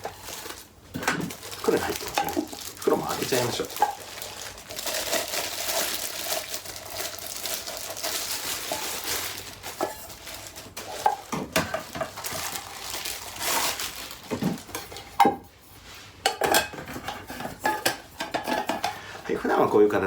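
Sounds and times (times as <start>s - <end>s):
bag rustling: 0.0s - 14.8s
metal pots clinking: 1.0s - 4.2s, 9.6s - 12.4s, 16.2s - 19.7s.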